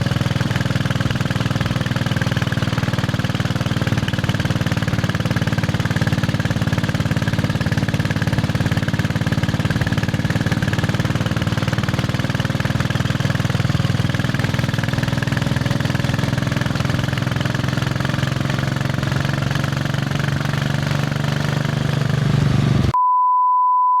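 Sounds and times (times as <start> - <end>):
motorcycle engine thumping: 0.0 - 23.0
high-pitched beep tone: 23.0 - 24.0.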